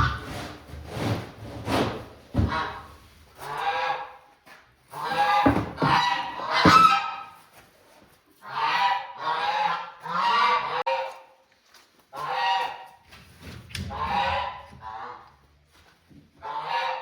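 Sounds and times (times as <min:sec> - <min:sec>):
geese honking: 0:08.4 - 0:11.1, 0:16.4 - 0:17.0.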